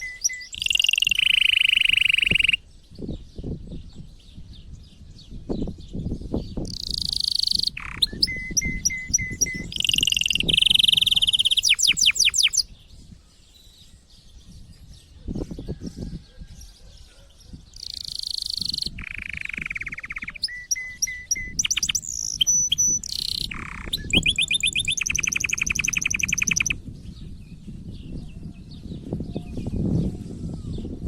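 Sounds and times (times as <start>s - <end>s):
canary singing trills: 0.0s - 2.6s, 6.4s - 13.8s, 14.4s - 26.8s.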